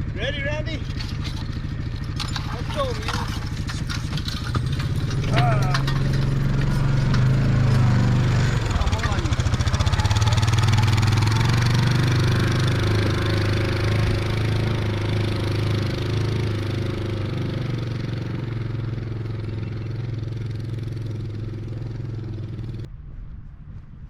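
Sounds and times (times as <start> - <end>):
utility vehicle engine running: 0.0 - 22.9.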